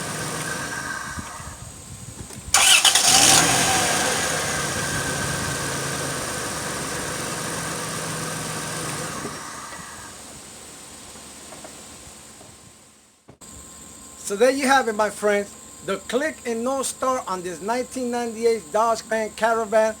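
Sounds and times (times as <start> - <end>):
car engine cranking: 0.0 - 1.6, 2.5 - 10.2
car engine idling: 0.0 - 1.7, 2.5 - 10.4.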